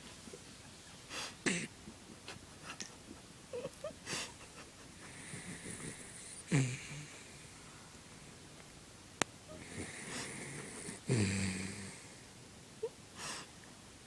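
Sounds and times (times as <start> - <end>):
dog snoring: 5.1 - 7.5, 9.5 - 12.2.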